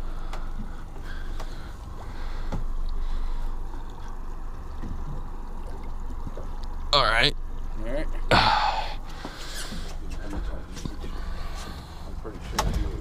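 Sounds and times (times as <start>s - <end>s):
boat engine rumbling: 0.0s - 13.0s
water noise: 0.0s - 13.0s
wind: 0.0s - 13.0s.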